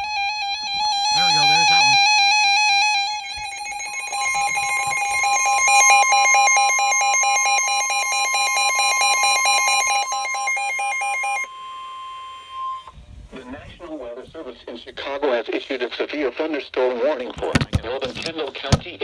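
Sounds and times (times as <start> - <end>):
steady alarm tone: 0.0 - 13.0.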